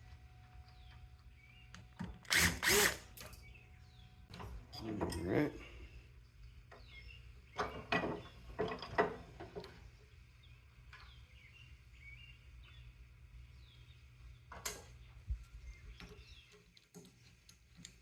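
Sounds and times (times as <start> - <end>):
small birds chirping: 0.6 - 2.0, 5.6 - 8.6, 9.7 - 18.0
sharp knocks and clatters: 7.6 - 9.7.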